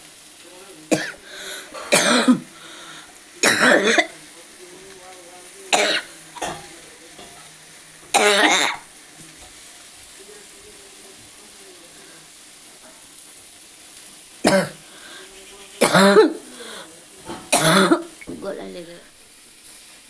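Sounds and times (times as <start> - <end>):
person coughing: 0.9 - 1.2, 1.8 - 2.5, 3.4 - 4.1, 5.8 - 6.6, 8.2 - 8.8, 14.5 - 14.8, 15.8 - 16.4, 17.5 - 18.1.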